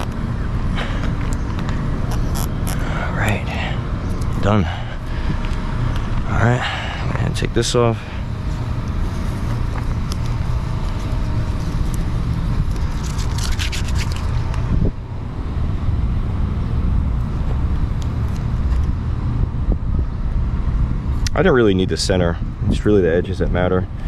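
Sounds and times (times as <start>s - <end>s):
low steady rumble: 0.0s - 24.0s
tape backing peeling: 1.2s - 2.8s, 8.8s - 14.6s
short scratchy rips: 2.1s - 2.8s, 12.7s - 14.4s.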